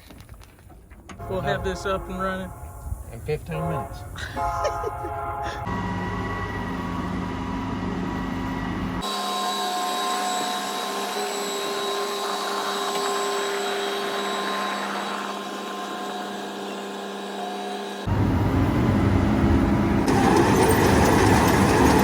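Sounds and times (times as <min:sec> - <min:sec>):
heavy engine rumbling: 0:01.0 - 0:09.0, 0:18.1 - 0:22.0
mechanical whine with tones: 0:05.6 - 0:22.0.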